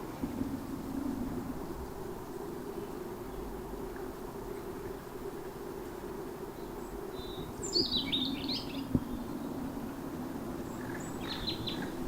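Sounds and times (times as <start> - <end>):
small bird chirping: 10.7 - 12.0.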